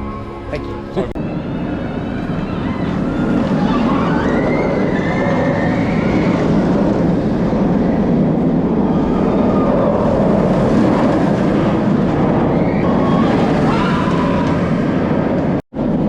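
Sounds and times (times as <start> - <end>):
high gliding squeals: 0.0 - 10.4
roller coaster rumbling on track: 0.0 - 16.0.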